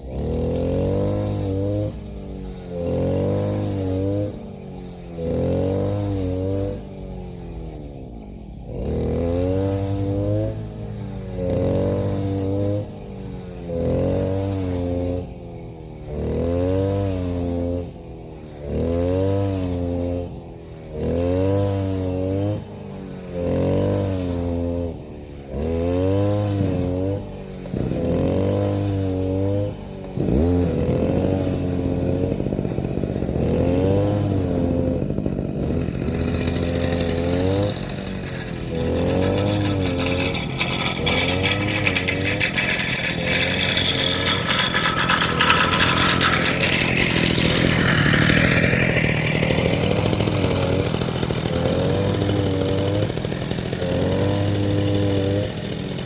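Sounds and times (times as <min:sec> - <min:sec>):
small engine revving: 0:00.0 - 0:56.0.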